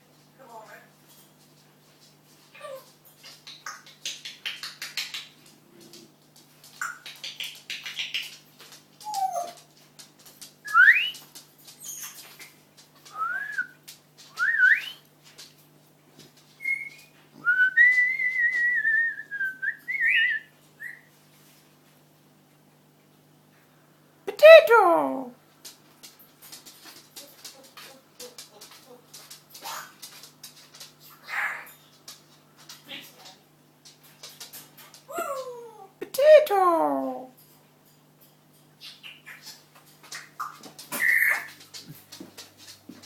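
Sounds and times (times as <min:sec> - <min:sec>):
parrot whistling: 0:10.7 - 0:11.2, 0:16.6 - 0:21.1
parrot chattering: 0:40.2 - 0:41.6.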